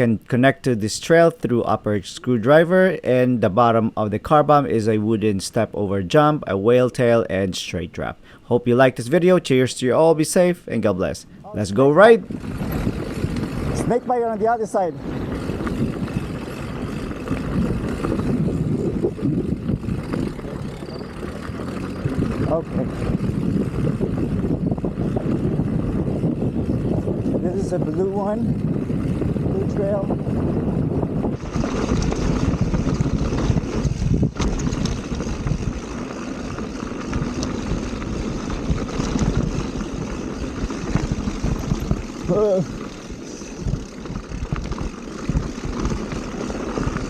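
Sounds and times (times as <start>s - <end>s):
bike tyres on dirt trail: 1.0s - 47.0s
bike rattling: 9.1s - 47.0s
steady rumble: 11.2s - 47.0s
wind buffeting microphone: 11.3s - 47.0s.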